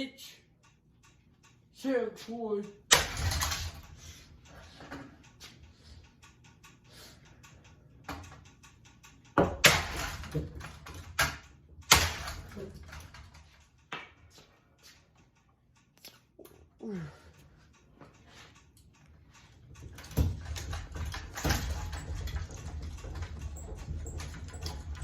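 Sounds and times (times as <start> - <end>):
ceiling fan being struck: 9.3 - 12.6
loose parts rattling: 19.8 - 25.0.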